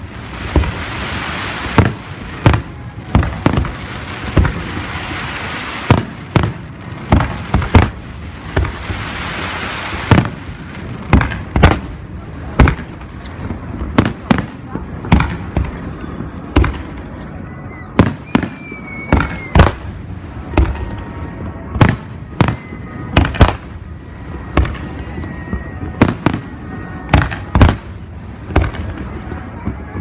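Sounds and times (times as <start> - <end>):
falling firework whistle: 15.9 - 27.8.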